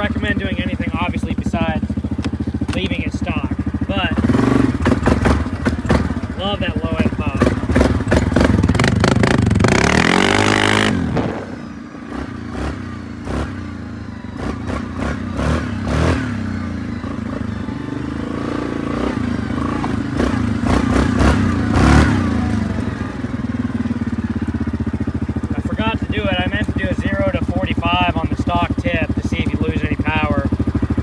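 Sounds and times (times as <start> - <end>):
exhaust pops and crackles: 0.0 - 12.7, 24.5 - 31.0
atv engine revving and idling: 0.0 - 31.0.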